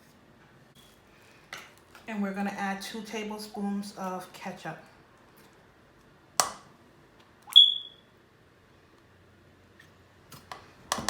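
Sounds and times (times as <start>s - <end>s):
high-pitched ringing ping: 7.6s - 8.0s.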